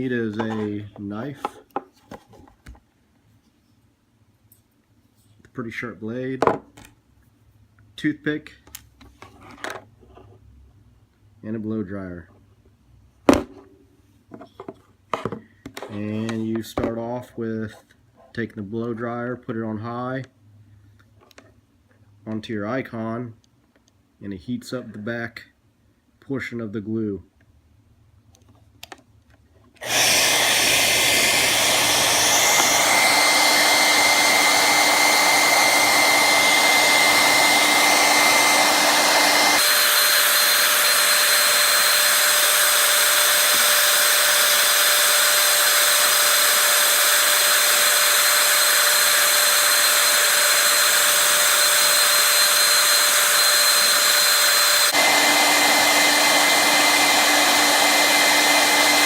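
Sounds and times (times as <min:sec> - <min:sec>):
hair dryer blowing with whine: 0:29.8 - 0:59.0.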